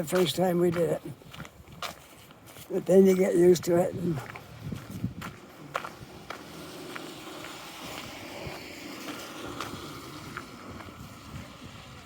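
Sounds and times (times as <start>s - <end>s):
footsteps crunching: 0.0s - 11.8s
tyres hissing on wet street: 5.3s - 12.0s.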